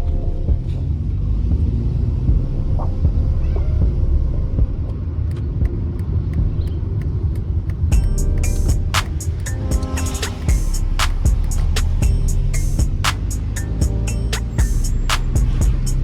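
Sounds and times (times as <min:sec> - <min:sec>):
car road rumble: 0:00.0 - 0:09.0.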